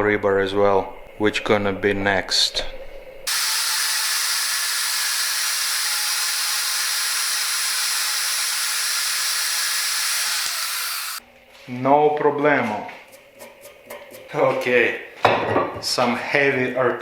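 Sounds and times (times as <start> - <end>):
metal bandsaw cutting rebar: 3.3 - 11.2.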